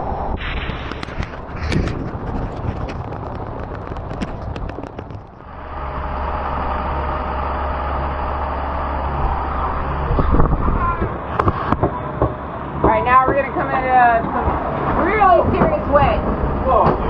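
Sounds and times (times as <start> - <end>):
wind buffeting microphone: 0.0 - 7.4, 9.1 - 17.0
sharp taps and knocks: 0.7 - 5.4.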